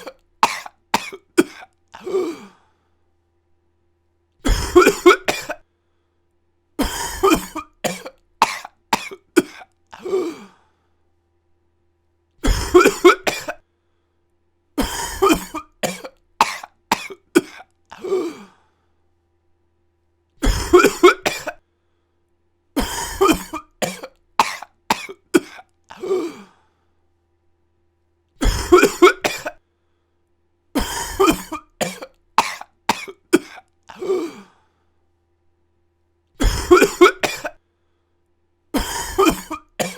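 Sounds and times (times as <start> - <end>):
person coughing: 0.0 - 2.6, 4.4 - 5.6, 6.8 - 10.6, 12.4 - 13.6, 14.8 - 18.6, 20.4 - 21.6, 22.8 - 26.6, 28.4 - 29.6, 30.8 - 34.6, 36.4 - 37.6, 38.8 - 39.9.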